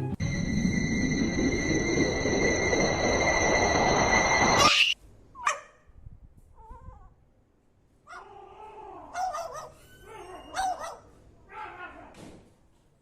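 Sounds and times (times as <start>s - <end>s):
loud noisy sound: 0.0s - 5.0s.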